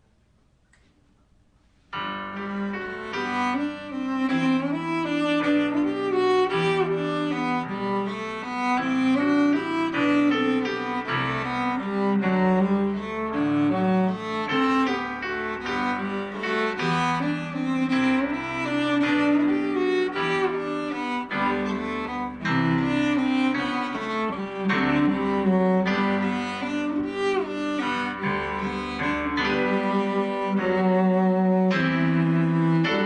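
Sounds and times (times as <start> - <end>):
piano chords: 1.9 - 33.0
bowed cello melody: 2.0 - 33.0.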